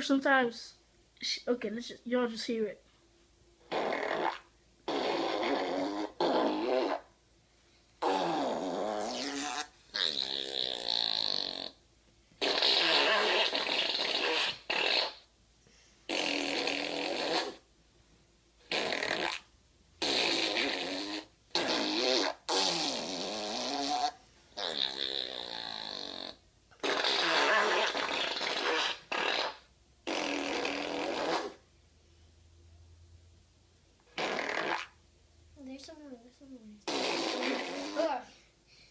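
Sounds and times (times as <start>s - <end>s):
fart noises: 3.6s - 7.2s, 8.0s - 11.8s, 12.4s - 15.3s, 16.1s - 17.7s, 18.6s - 31.7s, 34.0s - 35.0s, 36.8s - 38.3s.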